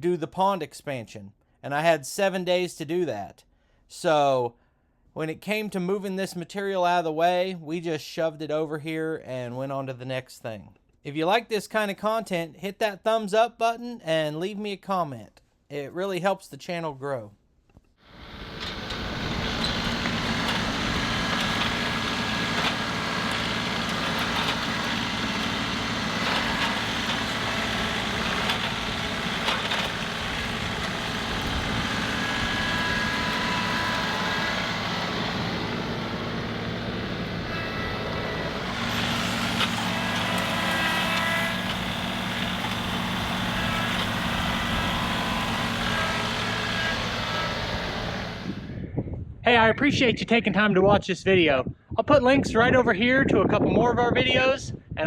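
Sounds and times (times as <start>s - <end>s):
tractor diesel engine running: 18.1s - 48.8s.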